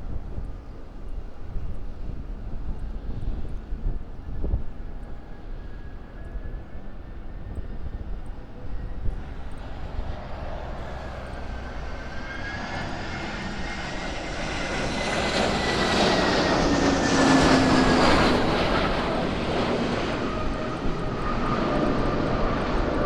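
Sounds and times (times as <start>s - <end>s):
jet engine whine: 0.0s - 23.0s
jet engines roaring: 7.0s - 23.0s.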